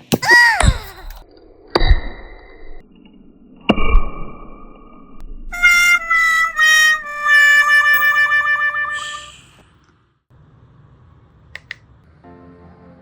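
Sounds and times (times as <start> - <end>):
reedy harmonica-like melody: 5.5 - 9.5.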